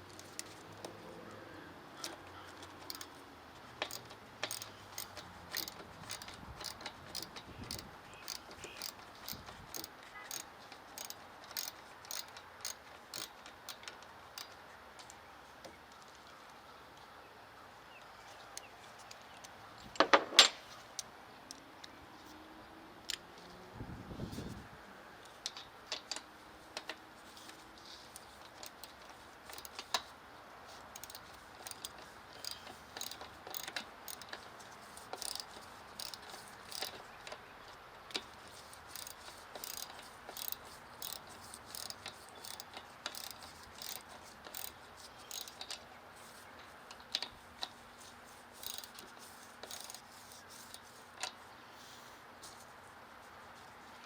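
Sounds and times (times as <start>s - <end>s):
socket ratchet clicking: 2.8s - 3.1s, 3.8s - 13.3s, 29.5s - 29.8s, 31.0s - 34.3s, 35.1s - 37.0s, 38.9s - 45.6s, 48.6s - 50.0s.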